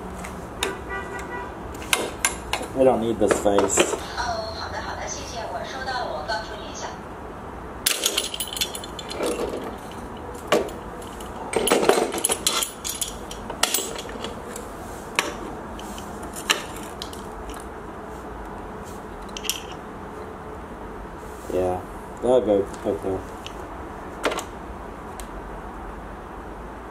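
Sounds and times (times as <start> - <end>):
metal tools clanking: 7.9 - 17.7, 19.3 - 19.8.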